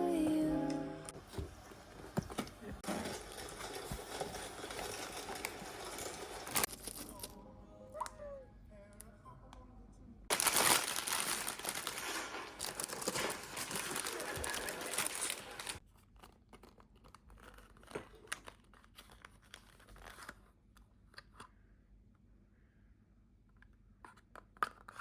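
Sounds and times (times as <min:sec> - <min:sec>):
packaging crinkling: 0:02.8 - 0:07.3, 0:10.3 - 0:20.5.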